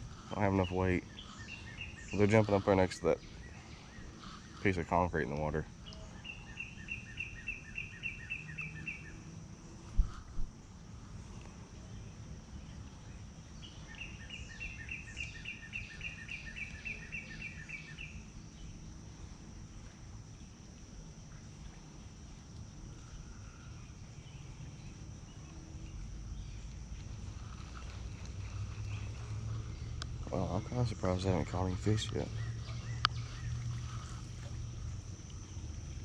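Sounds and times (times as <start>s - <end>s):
high-pitched insect drone: 0.0s - 11.0s, 21.2s - 36.0s.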